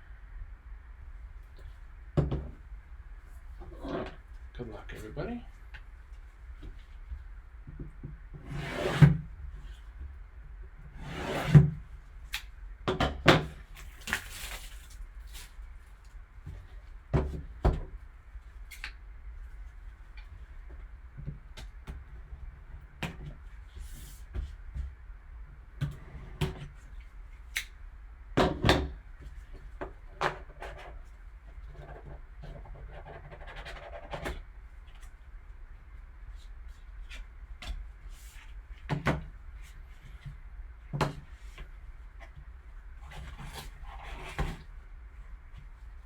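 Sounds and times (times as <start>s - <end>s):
wrapping rustling: 13.8s - 16.1s.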